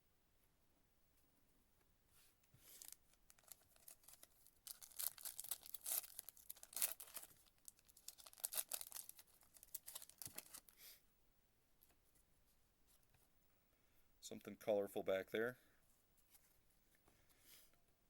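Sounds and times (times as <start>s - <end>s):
wrapper tearing and crinkling: 2.7s - 10.7s.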